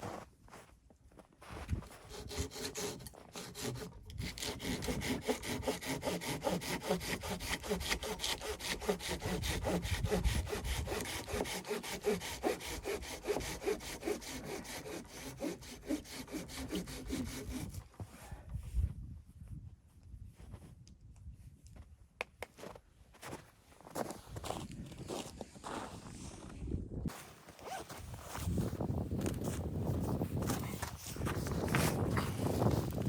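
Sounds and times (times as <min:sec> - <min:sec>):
hand saw cutting wood: 0:02.0 - 0:17.8.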